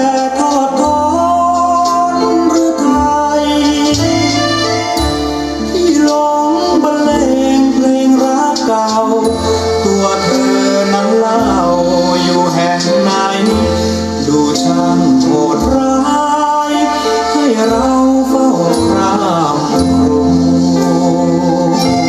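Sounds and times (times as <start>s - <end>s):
bass line: 0.0s - 22.0s
light percussion: 0.0s - 22.0s
song with singing: 0.0s - 22.0s
sustained reed-like notes: 3.4s - 8.0s, 9.2s - 22.0s.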